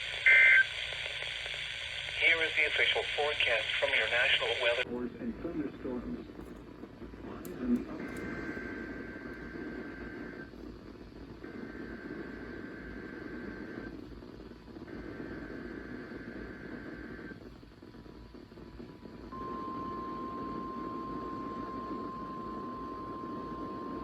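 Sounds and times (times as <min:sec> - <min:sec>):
radio data bursts: 0:00.0 - 0:04.9
static hiss: 0:00.0 - 0:06.3
steady warning alarm tone: 0:19.3 - 0:24.0.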